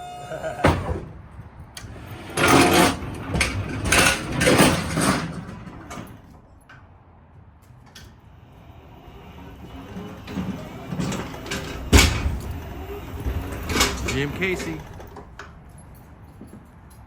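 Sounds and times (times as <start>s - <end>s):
goods rattling and scraping: 1.7s - 6.9s, 8.9s - 17.0s.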